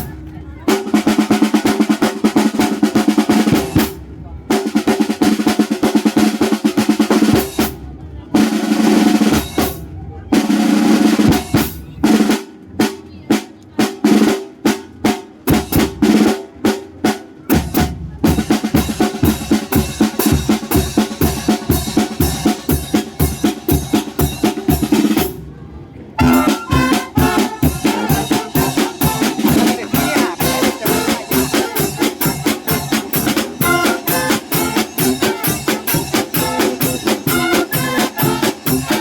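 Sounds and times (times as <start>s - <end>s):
wind band playing a polka: 0.0s - 7.7s, 8.4s - 9.8s, 13.8s - 25.4s, 26.2s - 39.0s.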